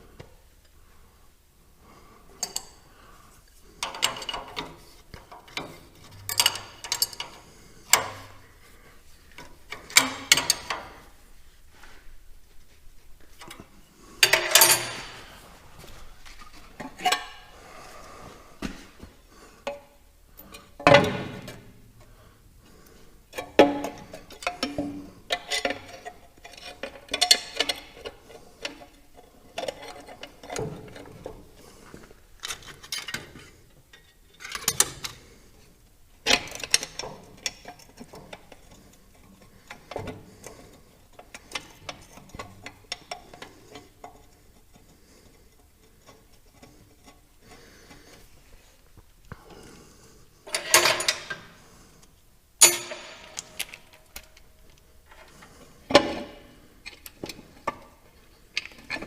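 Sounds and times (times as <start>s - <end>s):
tools and metal parts clinking: 2.4s - 2.8s, 3.8s - 8.4s, 9.4s - 11.1s, 14.2s - 15.5s, 16.8s - 17.5s, 23.3s - 31.7s, 32.4s - 35.3s, 50.4s - 51.5s, 52.6s - 59.0s.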